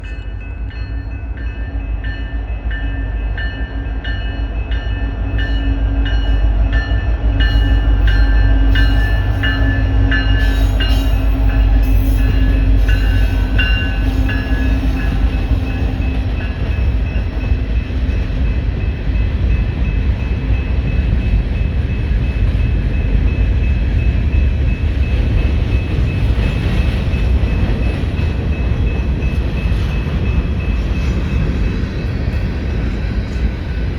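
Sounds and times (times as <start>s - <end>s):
freight train rumbling past: 0.0s - 33.9s.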